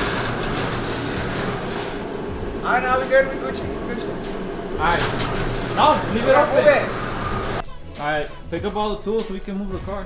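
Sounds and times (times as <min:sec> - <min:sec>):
garage door moving on tracks: 0:00.0 - 0:07.6.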